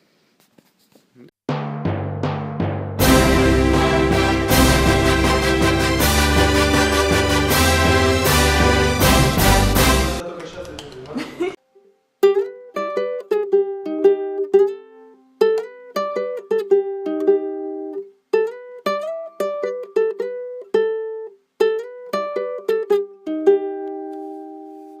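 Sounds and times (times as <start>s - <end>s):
plucked string melody: 1.5s - 10.2s, 12.2s - 24.9s.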